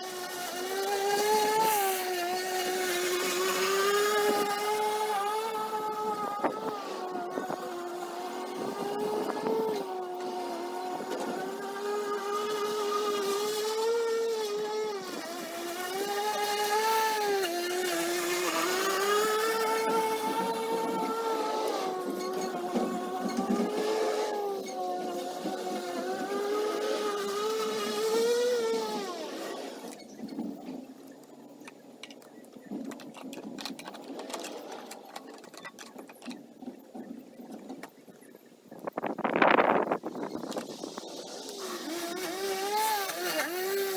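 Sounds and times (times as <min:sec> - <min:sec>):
electric lawn mower whining: 0:00.0 - 0:38.2, 0:38.8 - 0:43.9
clicks and rattles: 0:31.6 - 0:36.8.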